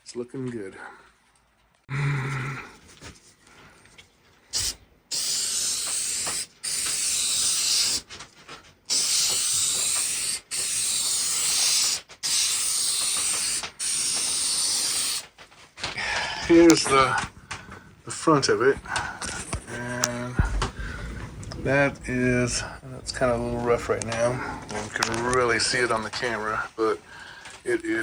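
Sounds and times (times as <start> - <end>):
hissing spray from a nozzle: 4.5 - 8.1, 8.9 - 15.3.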